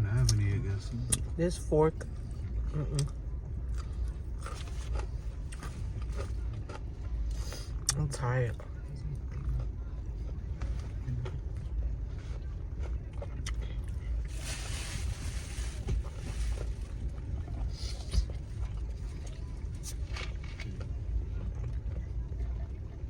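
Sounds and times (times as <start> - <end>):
low rumble inside car: 0.0 - 23.0
rustling: 14.2 - 17.0.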